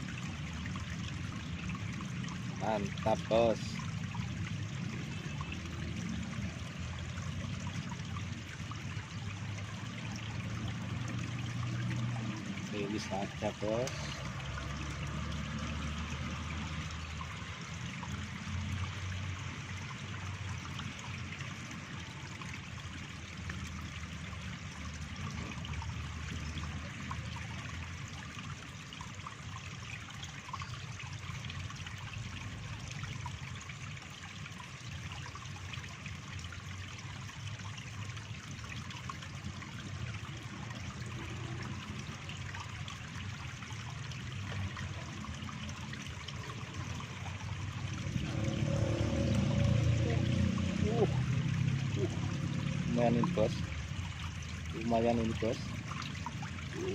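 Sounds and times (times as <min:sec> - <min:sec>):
stream water trickling: 0:00.0 - 0:56.9
low steady rumble: 0:36.7 - 0:56.9.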